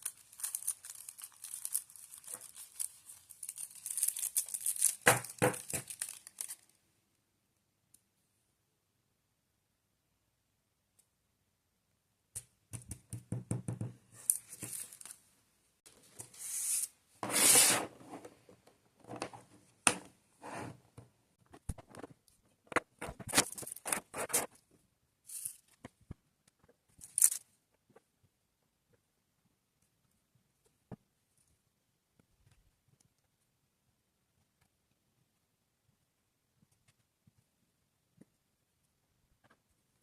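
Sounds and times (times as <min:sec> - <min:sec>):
plastic crinkling and tearing: 0:00.0 - 0:06.8, 0:27.0 - 0:27.4.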